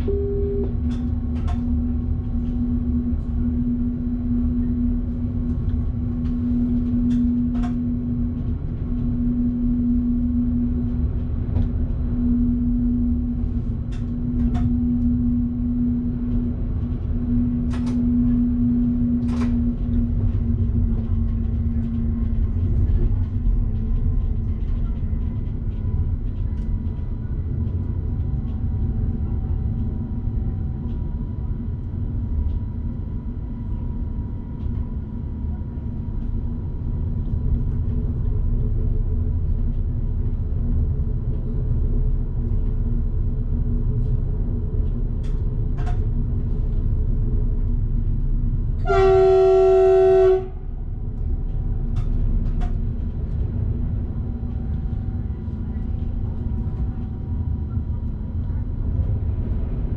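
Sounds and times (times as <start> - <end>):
train rumbling on track: 0.0 - 59.9
train horn blast: 48.8 - 50.8.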